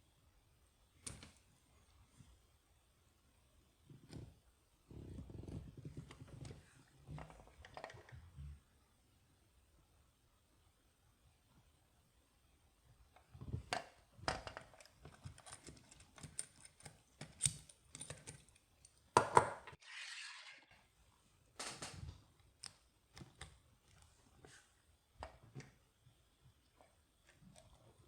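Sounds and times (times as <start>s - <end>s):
lock pick metal clicks: 14.8s - 19.1s.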